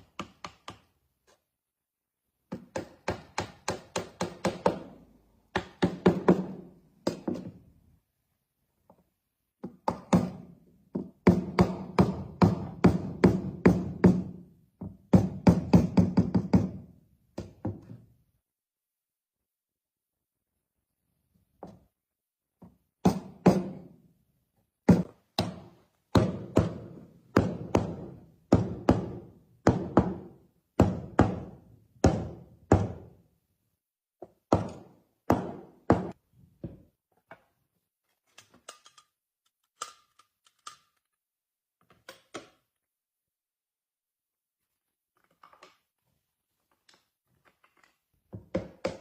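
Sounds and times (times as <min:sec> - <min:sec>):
hammering on wood: 0:09.6 - 0:17.9, 0:24.9 - 0:33.2, 0:34.5 - 0:36.2.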